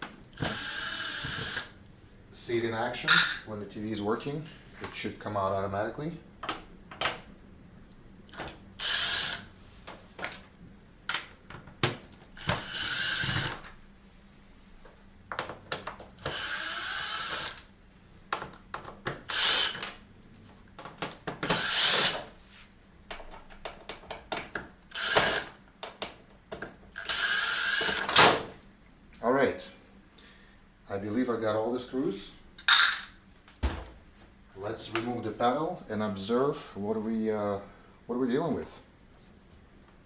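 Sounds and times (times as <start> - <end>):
electric screwdriver running: 0.4 - 1.7, 8.8 - 9.5, 12.4 - 13.6, 16.2 - 17.6, 19.3 - 19.8, 21.5 - 22.2, 24.9 - 25.5, 27.0 - 28.1
screws clicking and rattling: 19.3 - 20.0, 21.5 - 22.2.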